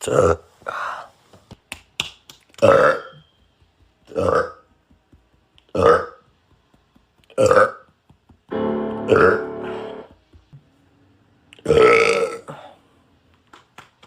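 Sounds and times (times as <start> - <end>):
held musical chord: 8.5 - 10.1
man burping loudly: 9.1 - 9.5, 11.6 - 12.6.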